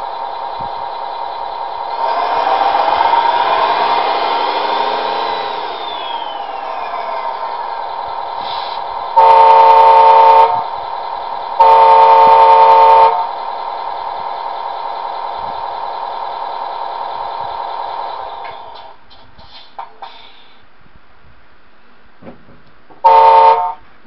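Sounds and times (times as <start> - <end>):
truck engine drone: 0.0 - 20.6
truck horn blasts: 9.2 - 10.6, 11.6 - 13.3, 23.0 - 23.8.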